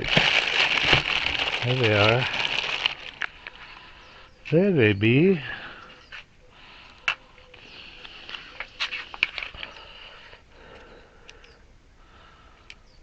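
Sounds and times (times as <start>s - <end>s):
plastic package crackling: 0.0s - 3.6s.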